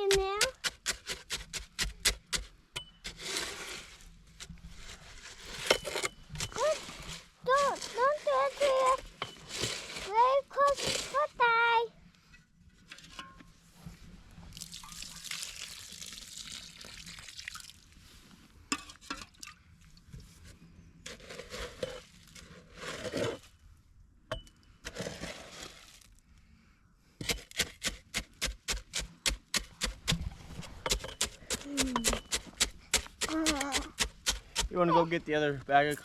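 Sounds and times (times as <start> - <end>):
water poured onto concrete: 14.5 - 17.9.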